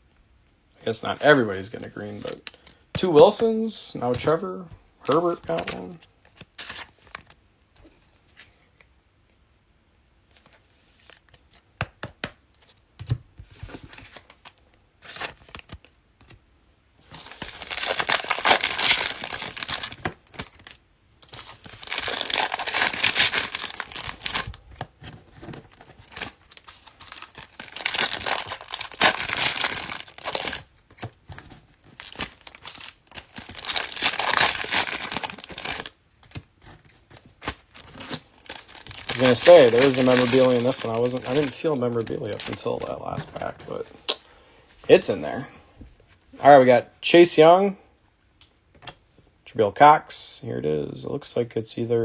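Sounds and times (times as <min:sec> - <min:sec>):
card pack wrappers tearing and crinkling: 0:17.0 - 0:31.0, 0:31.9 - 0:36.4, 0:37.1 - 0:44.2.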